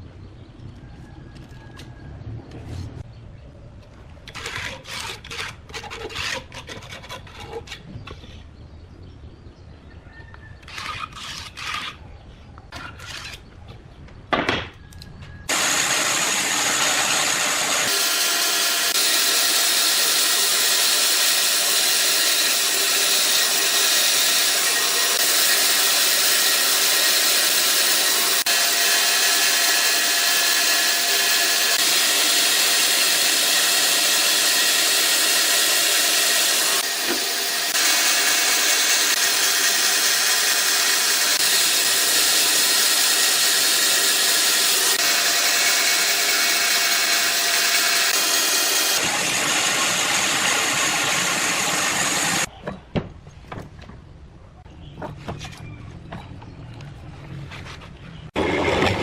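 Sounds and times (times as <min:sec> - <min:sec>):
scraping strokes on wood: 0:04.3 - 0:08.4, 0:10.6 - 0:12.0
power tool hissing: 0:15.5 - 0:52.5.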